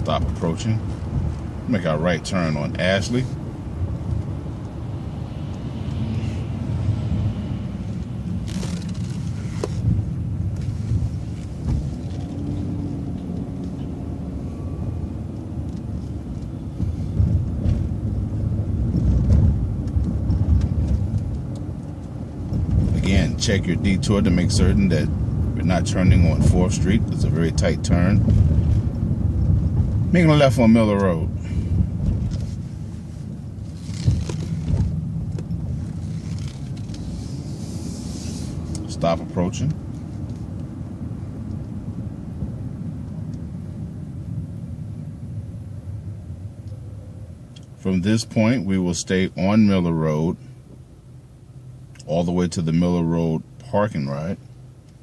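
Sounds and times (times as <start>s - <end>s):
bus engine and road rumble: 0.0s - 55.0s
bus body knocks and rattles: 18.8s - 21.2s.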